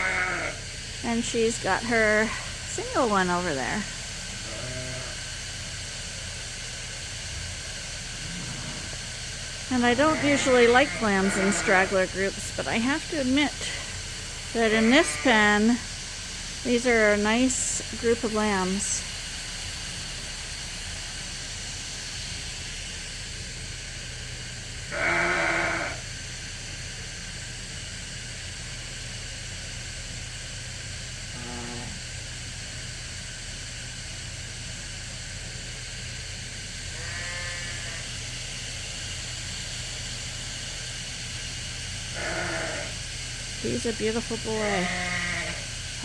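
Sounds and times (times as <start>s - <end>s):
sheep bleating: 0.0s - 0.6s, 4.4s - 5.2s, 9.8s - 12.1s, 14.6s - 15.8s, 24.9s - 26.0s, 37.0s - 38.0s, 42.2s - 43.0s, 44.6s - 45.6s
steady low hum: 0.0s - 46.0s.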